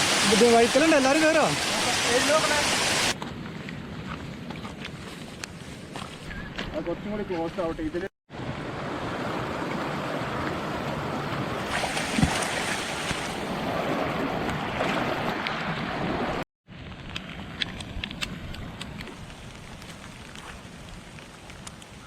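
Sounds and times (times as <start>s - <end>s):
water rushing: 0.0s - 3.2s, 8.3s - 16.4s.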